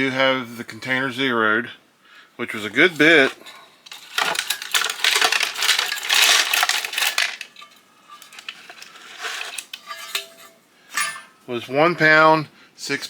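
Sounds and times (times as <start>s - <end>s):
copper pieces clinking in metal container: 2.5s - 11.4s.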